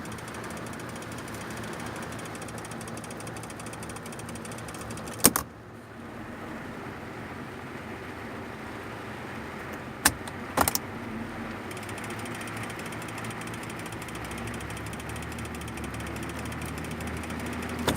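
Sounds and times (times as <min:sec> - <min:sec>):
fast steady ticking: 0:00.0 - 0:05.4, 0:10.0 - 0:17.9
mechanical clicking: 0:00.0 - 0:05.5, 0:09.7 - 0:10.9, 0:11.5 - 0:17.9
low hum: 0:00.0 - 0:17.9.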